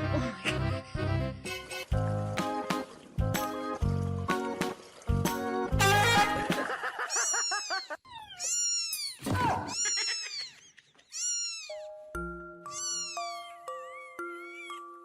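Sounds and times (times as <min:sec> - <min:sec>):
cat meowing: 0:07.1 - 0:11.9, 0:12.7 - 0:14.8.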